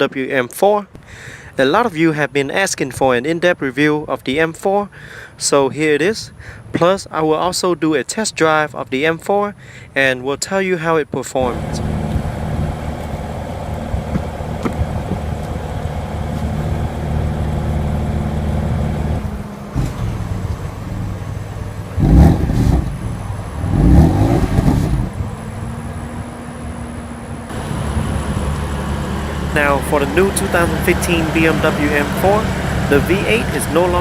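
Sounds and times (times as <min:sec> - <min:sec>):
loud engine revs: 0:11.4 - 0:21.2, 0:21.8 - 0:26.9, 0:27.5 - 0:34.0
car engine running: 0:11.4 - 0:34.0.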